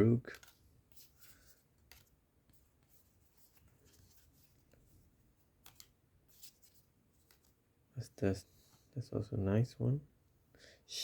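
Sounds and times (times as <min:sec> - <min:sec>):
trading cards rustling: 0:00.0 - 0:07.6.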